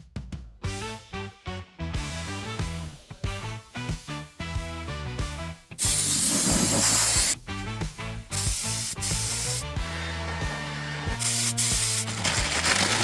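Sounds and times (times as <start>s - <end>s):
background music: 0.6s - 13.0s
spray gun hissing: 5.8s - 7.4s, 8.3s - 9.6s, 11.0s - 12.2s.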